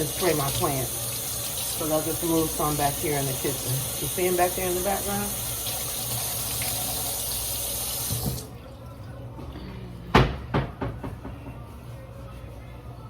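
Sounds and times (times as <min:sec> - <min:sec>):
kitchen tap running: 0:00.0 - 0:08.6
knocks: 0:10.2 - 0:11.4.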